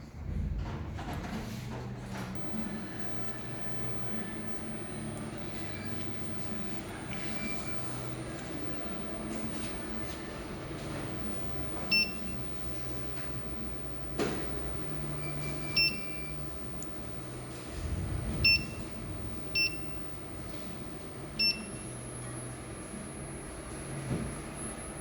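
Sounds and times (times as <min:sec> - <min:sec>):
faint high whine: 0:02.4 - 0:25.0
low hum: 0:02.4 - 0:25.0
longer electronic tone: 0:11.2 - 0:25.0
two-note electronic beeps: 0:15.0 - 0:16.4.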